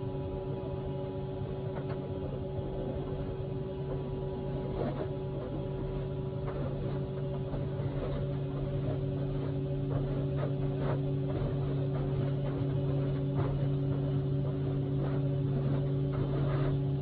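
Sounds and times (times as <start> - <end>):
machine humming: 0.0 - 17.0.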